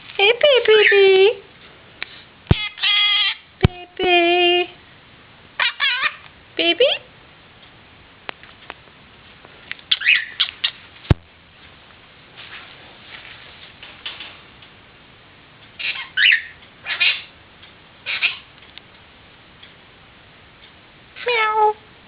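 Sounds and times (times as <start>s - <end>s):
parrot calling: 2.5s - 3.5s, 5.6s - 6.3s, 9.9s - 10.9s, 15.8s - 17.4s, 18.0s - 18.6s
parrot chatter: 2.5s - 3.5s, 5.6s - 7.1s, 9.9s - 10.9s, 15.8s - 17.4s, 18.0s - 18.6s.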